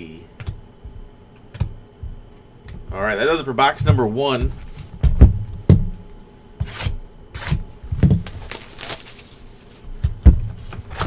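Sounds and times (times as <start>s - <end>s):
knocks and thumps on tabletop: 3.8s - 6.0s
card packs rustling: 7.9s - 10.1s.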